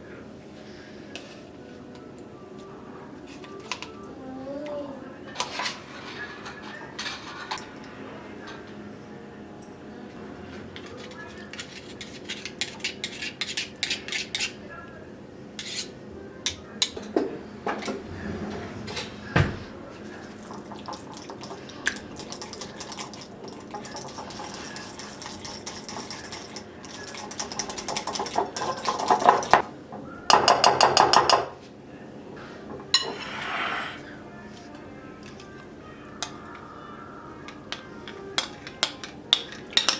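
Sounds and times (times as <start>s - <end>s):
crockery and cutlery clinking: 5.3s - 8.8s, 18.9s - 29.7s, 32.7s - 33.4s, 37.4s - 39.9s.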